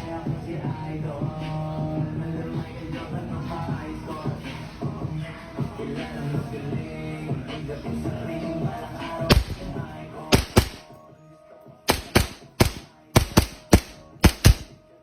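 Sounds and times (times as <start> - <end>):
airsoft pistol shots: 9.3 - 9.7, 10.3 - 10.9, 11.9 - 14.8.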